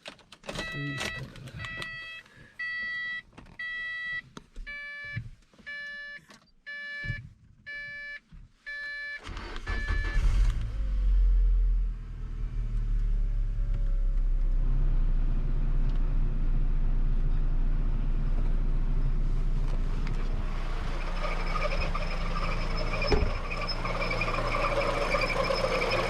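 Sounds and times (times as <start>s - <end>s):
car warning chime beeping: 0.6s - 10.4s
car engine starting and running: 9.1s - 26.0s.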